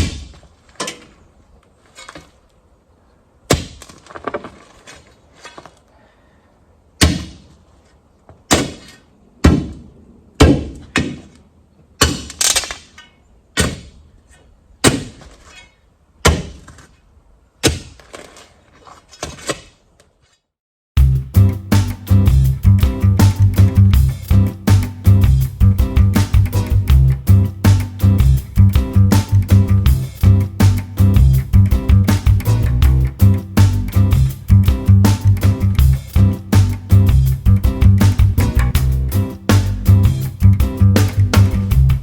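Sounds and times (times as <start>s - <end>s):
sharp hard knocks: 0.0s - 0.4s, 3.5s - 4.0s, 7.0s - 7.5s, 8.5s - 9.8s, 10.4s - 11.3s, 12.0s - 12.8s, 13.6s - 14.0s, 14.8s - 15.3s, 16.2s - 16.8s, 17.6s - 18.0s.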